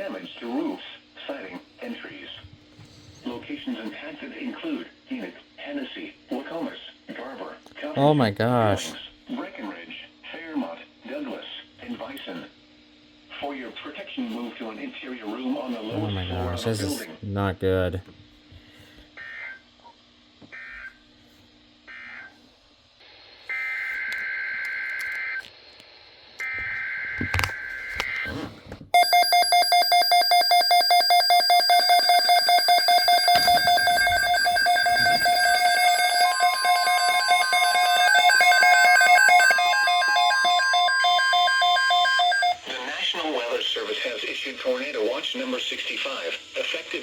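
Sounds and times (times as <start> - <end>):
steady attention tone: 29.0 - 42.6
two-tone data bursts: 29.0 - 42.6
rapidly pulsing electronic alarm: 29.0 - 42.7.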